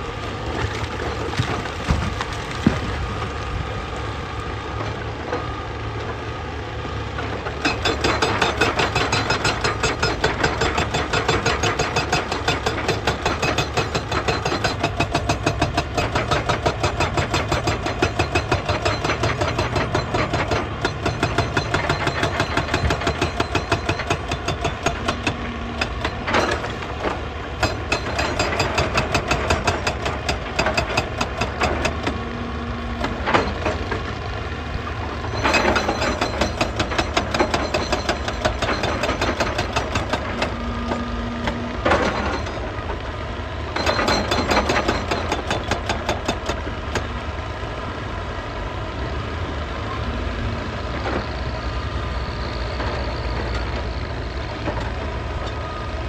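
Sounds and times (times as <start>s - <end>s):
diesel engine running: 0.0s - 56.0s
hydraulic breaker hammering rock: 7.4s - 32.2s, 35.3s - 42.7s, 43.7s - 47.1s.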